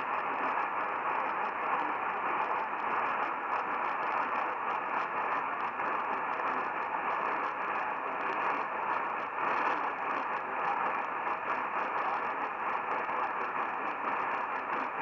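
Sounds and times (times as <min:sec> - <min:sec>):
radio static hiss and crackle: 0:00.0 - 0:15.0.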